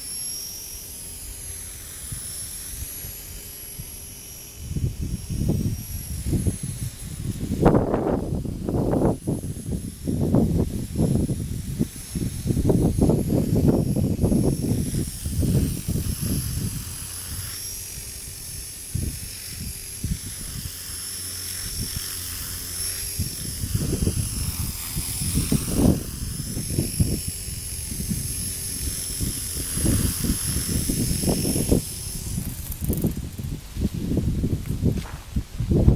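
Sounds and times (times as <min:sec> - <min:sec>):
rc helicopter rotor whining: 0:00.0 - 0:35.9
wind buffeting microphone: 0:04.6 - 0:35.9.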